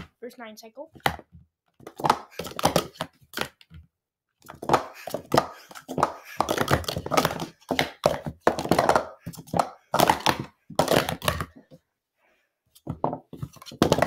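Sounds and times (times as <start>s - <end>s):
plastic cups clacking: 1.8s - 3.8s, 4.4s - 11.8s, 12.8s - 14.0s.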